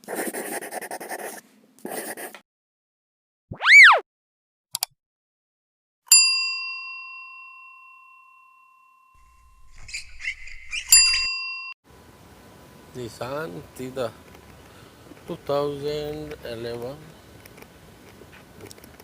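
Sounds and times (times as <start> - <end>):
tone sweeping up and down: 3.5 - 4.0
bell ding: 6.1 - 9.6, 10.9 - 11.8.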